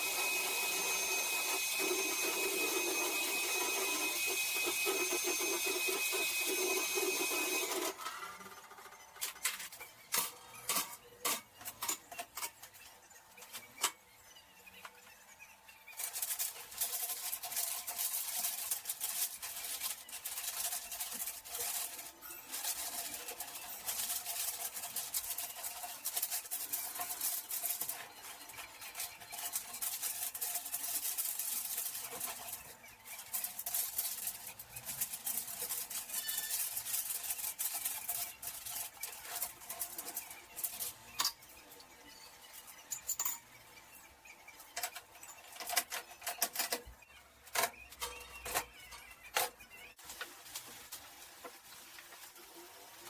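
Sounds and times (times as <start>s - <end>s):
dishes and utensils clinking: 6.5s - 14.0s, 16.0s - 43.6s.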